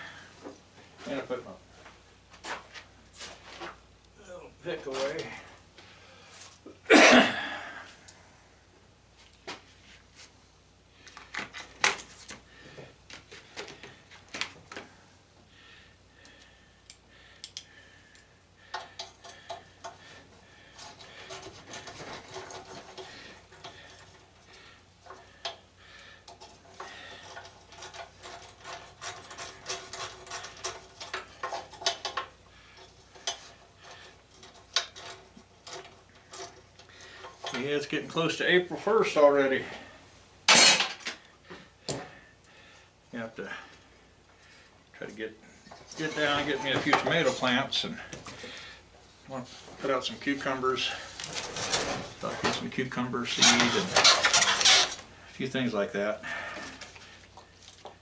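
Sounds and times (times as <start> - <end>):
metal tools clinking and scraping: 20.7 - 25.6, 26.2 - 38.0, 40.5 - 41.2, 45.6 - 48.6, 49.9 - 55.0.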